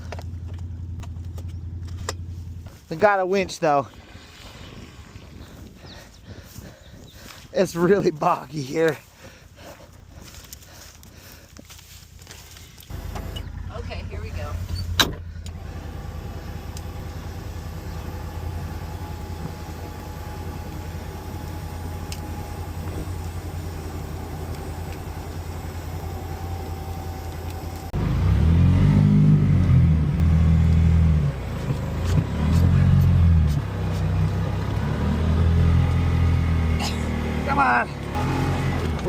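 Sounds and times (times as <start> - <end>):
vehicle engine revving: 12.9 - 39.0.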